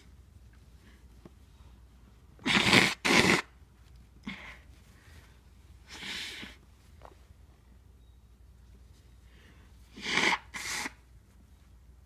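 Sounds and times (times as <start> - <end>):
person sneezing: 10.0 - 11.0.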